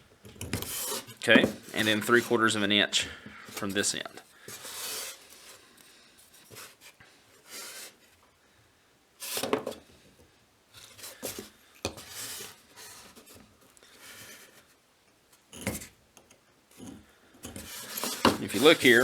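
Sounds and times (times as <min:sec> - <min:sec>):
scribe scratching on steel: 0:00.6 - 0:02.4, 0:17.6 - 0:19.0
ruler clattering: 0:17.6 - 0:19.0.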